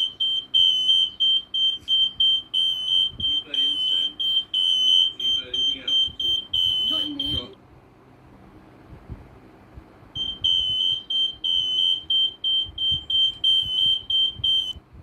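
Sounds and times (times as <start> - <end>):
alarm beeping rapidly: 0.0 - 7.6, 10.2 - 14.8.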